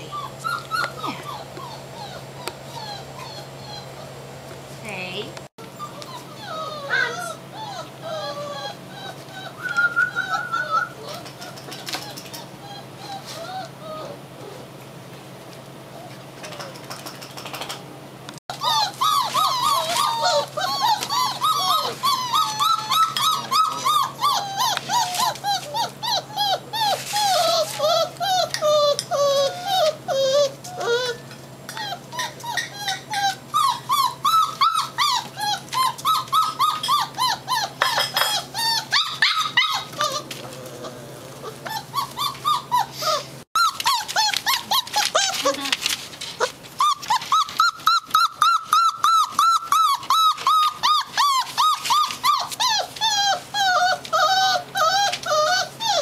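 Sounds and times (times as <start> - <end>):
puppies whimpering and squealing: 0.0 - 14.8, 18.5 - 56.0.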